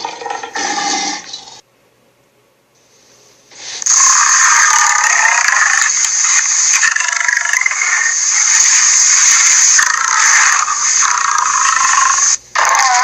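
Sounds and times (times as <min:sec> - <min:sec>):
loud harsh roaring hiss: 0:03.6 - 0:13.0.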